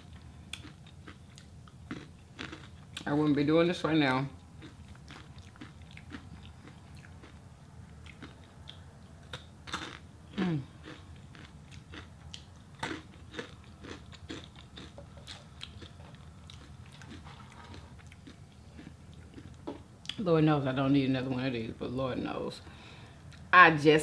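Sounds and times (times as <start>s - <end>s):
chewing and crunching food: 0.0s - 20.2s
person humming mm: 10.3s - 10.8s.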